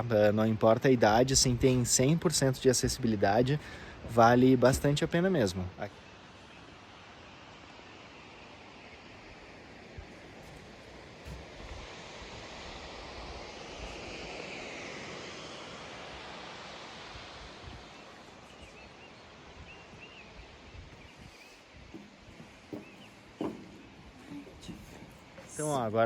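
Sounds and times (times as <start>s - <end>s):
waterfall roaring: 21.9s - 25.9s.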